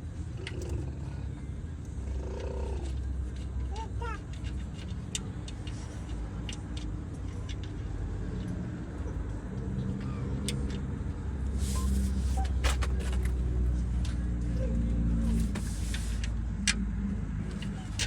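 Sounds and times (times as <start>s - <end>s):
vehicle engine droning: 0.0s - 18.0s.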